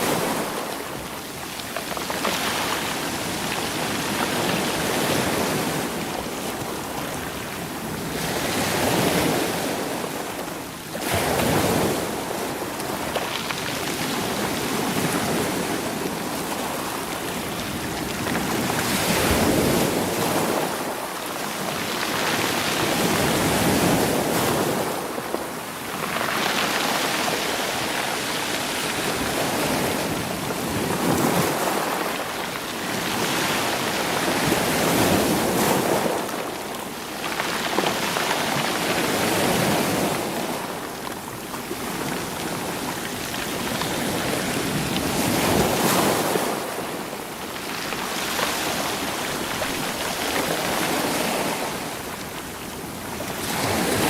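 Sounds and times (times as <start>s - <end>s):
rocks rolling in surf: 0.0s - 54.0s
waves washing on stony shore: 0.0s - 54.0s.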